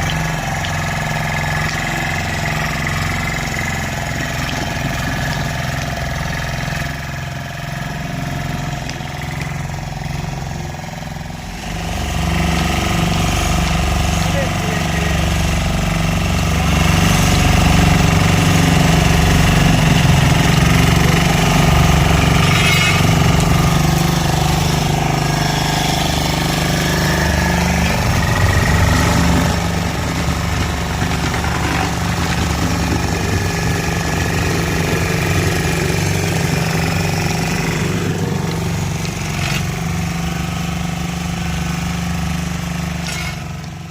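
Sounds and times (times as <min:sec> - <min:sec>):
road roller engine drone: 0:00.0 - 0:43.9.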